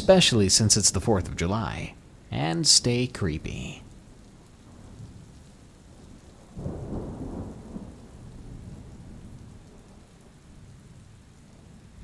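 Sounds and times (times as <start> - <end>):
rain falling: 0.0 - 12.0
low rumble of thunder: 3.9 - 12.0.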